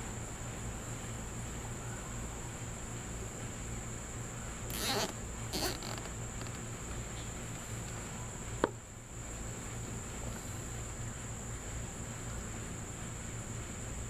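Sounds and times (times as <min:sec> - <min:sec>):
zip ties rasping: 0:04.7 - 0:06.6.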